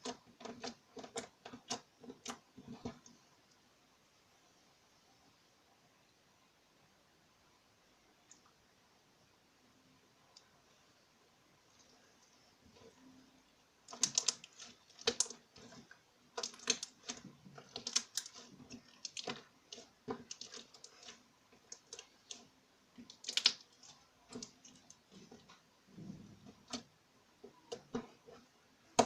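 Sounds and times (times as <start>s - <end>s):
hands squeezing wet slime: 13.8s - 25.6s.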